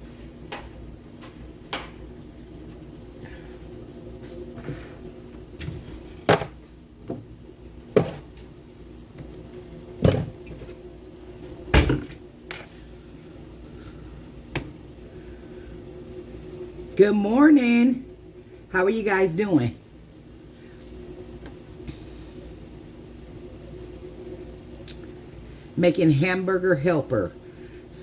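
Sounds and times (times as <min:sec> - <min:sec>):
steady low hum: 0:00.0 - 0:28.0
clunks and knocks of objects: 0:05.6 - 0:07.3, 0:10.0 - 0:10.8, 0:11.7 - 0:12.7.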